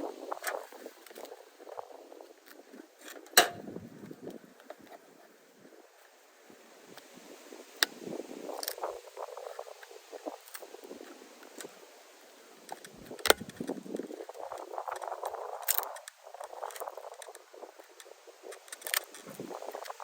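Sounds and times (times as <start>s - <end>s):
sharp clicks and knocks: 3.1s - 3.7s.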